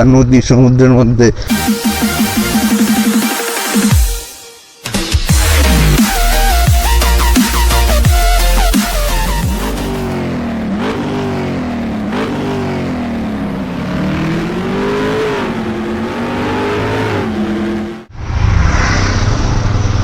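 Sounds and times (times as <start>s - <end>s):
engine revving: 5.2s - 20.0s
motorcycle engine drone: 5.3s - 20.0s.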